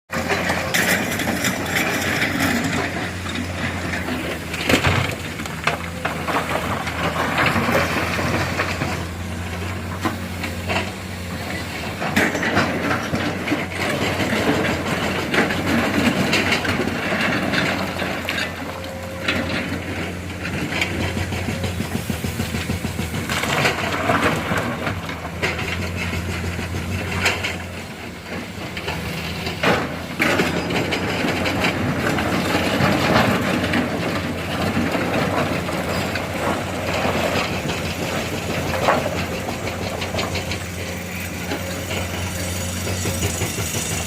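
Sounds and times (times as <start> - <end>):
excavator diesel engine running: 0.1 - 44.0.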